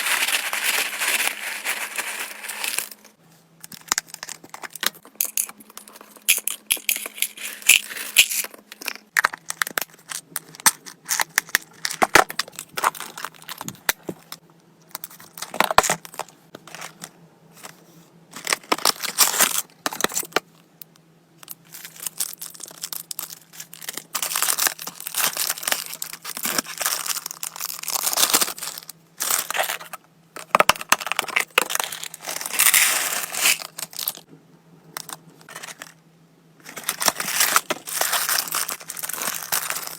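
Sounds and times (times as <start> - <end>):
packaging crinkling and tearing: 0.0 - 3.2, 21.7 - 29.9, 31.0 - 34.3, 36.7 - 39.9.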